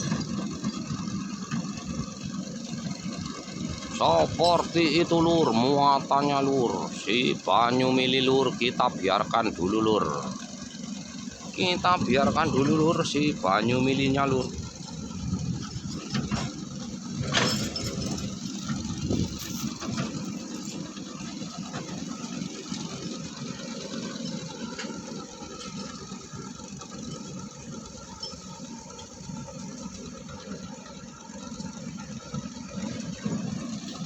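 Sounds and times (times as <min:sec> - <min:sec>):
diesel engines running: 0:00.0 - 0:34.0
knocks and clatters: 0:15.8 - 0:21.0.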